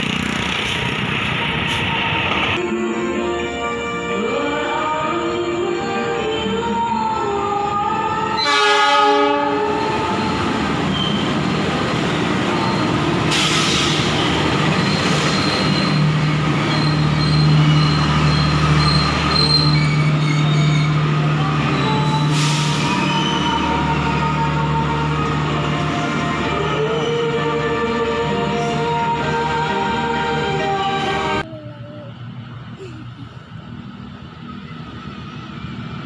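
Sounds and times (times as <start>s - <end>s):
train running on rails: 0.0s - 36.0s
locomotive horn blast: 8.3s - 11.2s.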